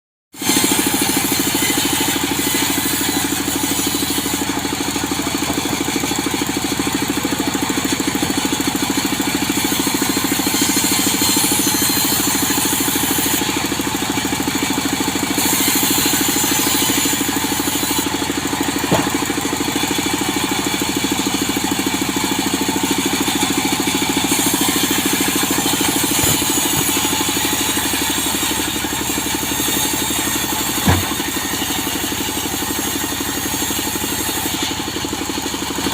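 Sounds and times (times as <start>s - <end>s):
engine saw cutting wood: 0.3s - 35.9s
sharp knocks: 18.8s - 19.5s, 25.7s - 27.2s, 30.8s - 31.4s.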